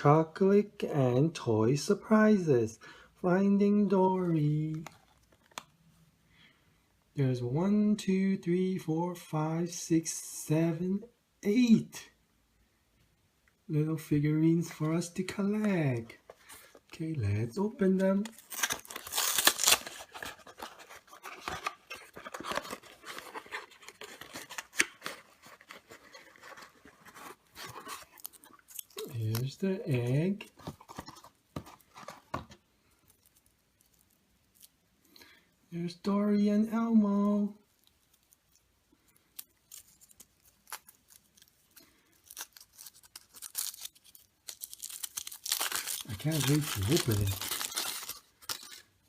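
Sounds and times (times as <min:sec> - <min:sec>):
foil wrapper crinkling: 0:17.8 - 0:29.6, 0:37.7 - 0:49.0.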